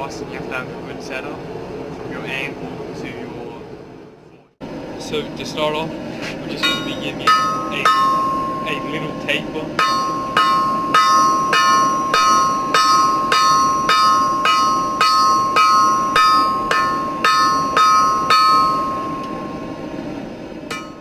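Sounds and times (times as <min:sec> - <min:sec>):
hammer ringing on anvil: 0:06.5 - 0:19.6, 0:20.7 - 0:21.0.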